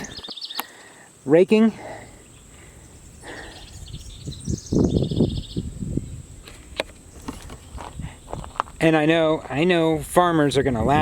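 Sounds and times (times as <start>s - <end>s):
bird trilling: 2.3s - 5.7s.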